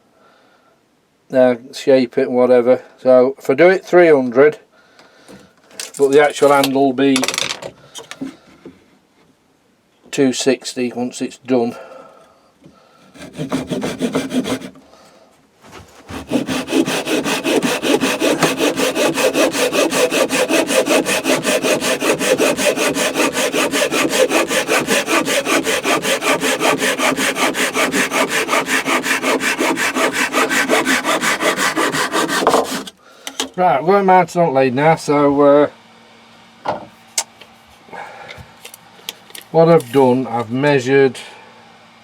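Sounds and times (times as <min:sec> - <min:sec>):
hand saw cutting wood: 0:13.1 - 0:14.8, 0:16.0 - 0:33.0.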